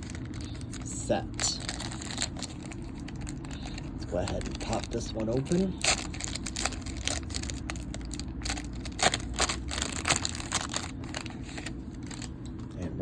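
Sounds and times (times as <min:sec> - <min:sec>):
foil wrapper crinkling: 0:00.0 - 0:12.4.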